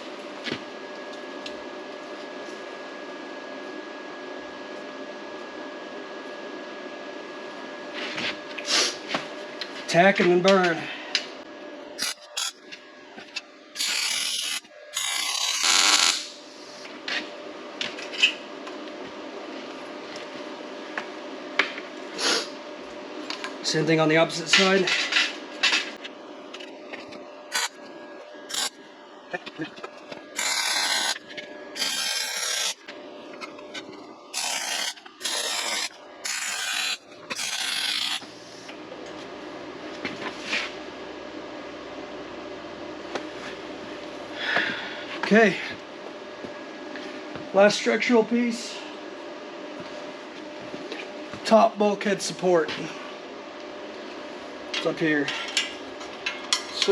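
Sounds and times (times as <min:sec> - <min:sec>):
crackling welding arc: 0:12.0 - 0:12.6, 0:13.8 - 0:16.4, 0:27.5 - 0:27.8, 0:28.4 - 0:28.8, 0:30.3 - 0:32.9, 0:34.3 - 0:38.3.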